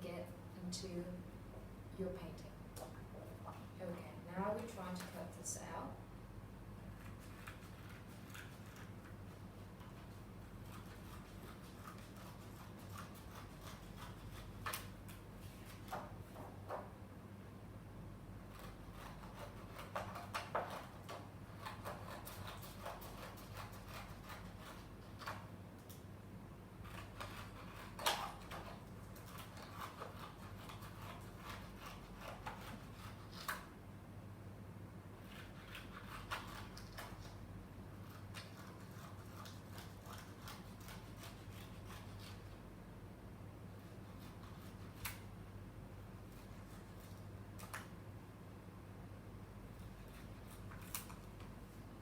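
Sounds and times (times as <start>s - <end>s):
scissors cutting paper: 7.0s - 9.1s, 10.6s - 16.1s, 18.5s - 26.0s, 26.8s - 33.7s, 35.2s - 42.6s, 44.0s - 45.3s, 49.7s - 51.5s.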